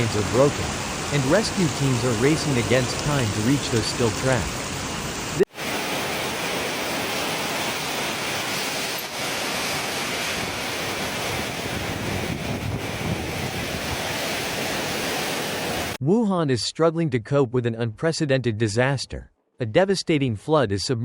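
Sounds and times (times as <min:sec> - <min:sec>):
water rushing: 0:00.0 - 0:16.0.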